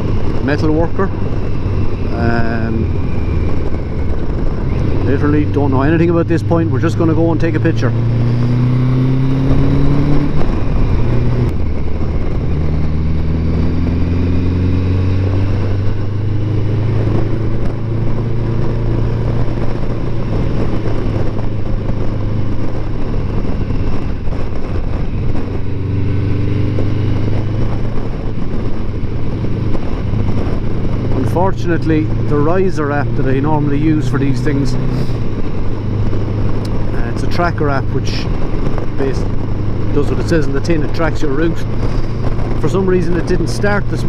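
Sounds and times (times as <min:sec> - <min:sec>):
motorcycle engine accelerating: 0:00.0 - 0:44.0.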